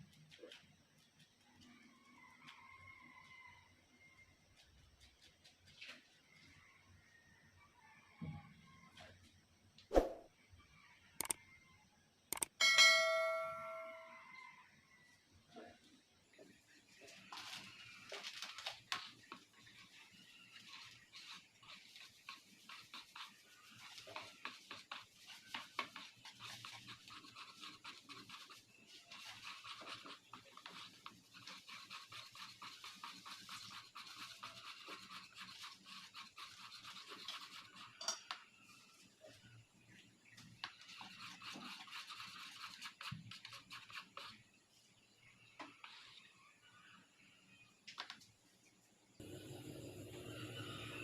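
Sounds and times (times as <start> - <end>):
utensil beating mixture in bowl: 16.5 - 38.8, 40.2 - 44.6, 45.5 - 46.2.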